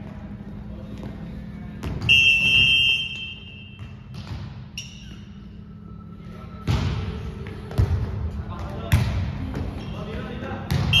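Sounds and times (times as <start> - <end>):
referee's whistle blast: 2.1 - 3.7.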